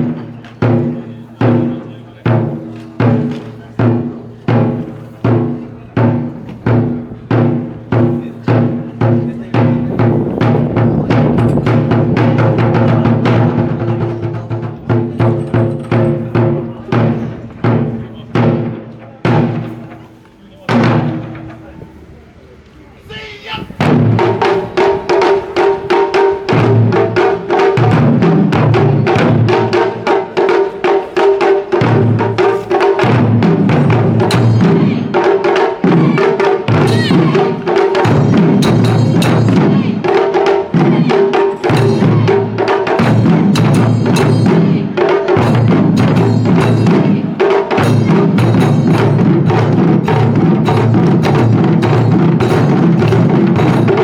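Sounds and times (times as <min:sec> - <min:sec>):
heavy low drum hits: 0:00.0 - 0:20.1, 0:20.7 - 0:22.0, 0:23.8 - 0:54.0
rapid drum strikes: 0:00.0 - 0:22.0, 0:23.7 - 0:54.0.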